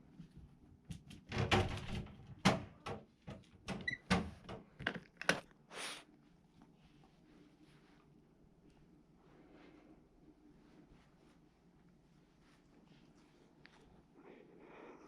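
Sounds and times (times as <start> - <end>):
knocks and thumps in a room: 0.0 - 5.1.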